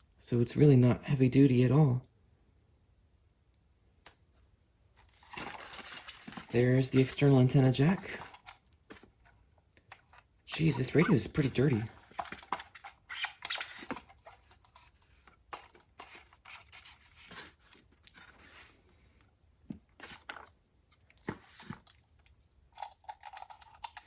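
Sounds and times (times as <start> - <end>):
hands rubbing and scraping radio: 5.2 - 9.3, 10.5 - 18.8.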